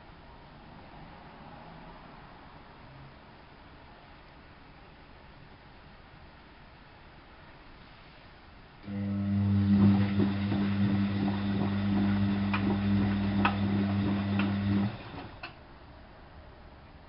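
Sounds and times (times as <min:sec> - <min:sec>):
washing machine drain pump humming: 0:08.8 - 0:15.6.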